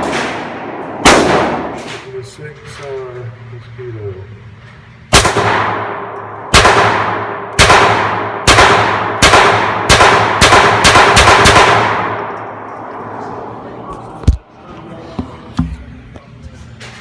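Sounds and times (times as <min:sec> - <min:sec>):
pistol shots echoing: 0:00.0 - 0:02.1, 0:05.1 - 0:12.7.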